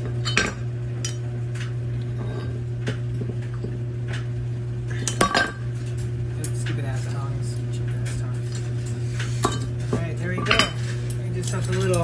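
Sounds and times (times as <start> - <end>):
steady low hum: 0.0 - 12.0
metal tongs knocking crucible: 9.5 - 12.0.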